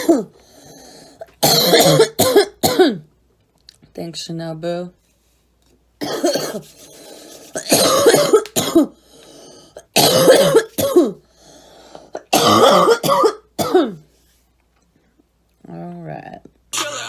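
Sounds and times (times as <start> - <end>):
woman coughing: 0.0 - 0.4, 1.4 - 3.1, 6.0 - 6.8, 7.5 - 9.0, 9.8 - 11.2, 12.2 - 14.0.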